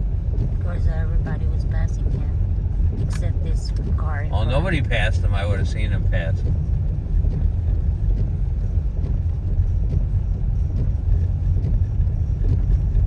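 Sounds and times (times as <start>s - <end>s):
car engine and tyre rumble: 0.0s - 13.0s.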